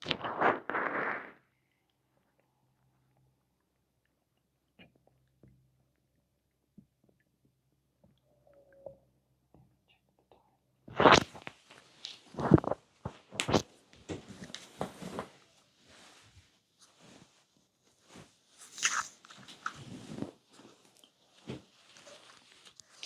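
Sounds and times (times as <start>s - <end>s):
stomach growling: 0.0s - 1.5s, 12.3s - 13.6s.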